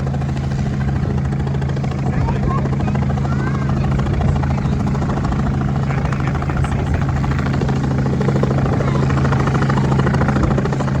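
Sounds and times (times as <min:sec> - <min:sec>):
helicopter rotor hovering: 0:00.0 - 0:11.0.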